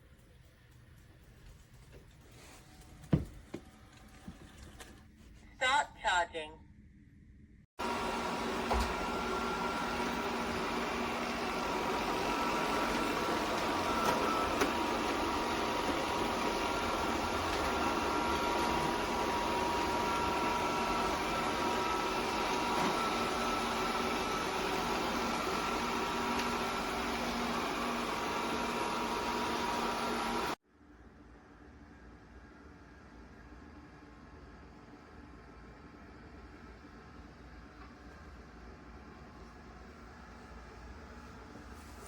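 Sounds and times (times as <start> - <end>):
robot vacuum whirring: 7.8 - 30.6.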